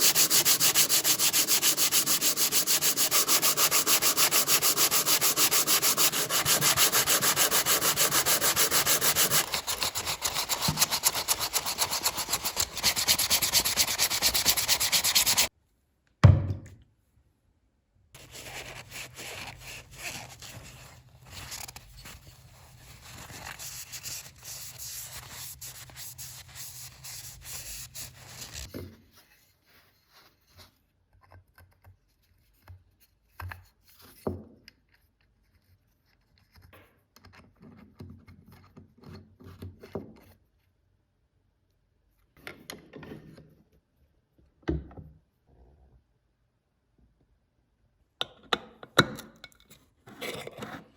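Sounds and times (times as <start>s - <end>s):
hand sanding strokes: 0.0s - 15.5s, 18.2s - 20.8s, 22.7s - 28.7s
thump: 16.2s - 16.7s.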